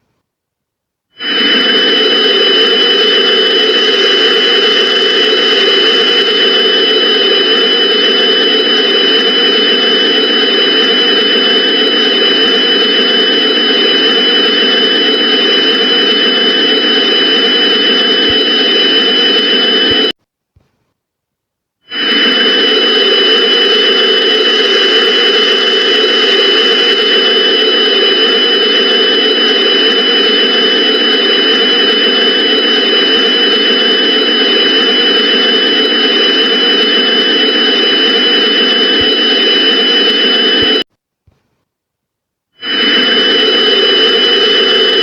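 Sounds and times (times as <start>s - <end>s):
loud steady droning noise: 1.2s - 20.2s, 21.9s - 40.8s, 42.6s - 45.0s.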